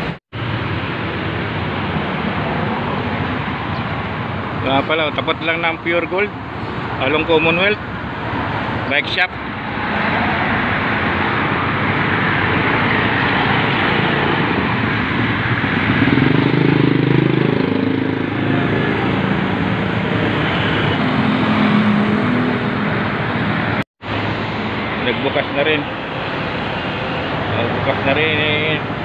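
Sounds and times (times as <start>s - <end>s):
road traffic noise: 0.0s - 29.0s
vehicle engine passing by: 9.7s - 29.0s.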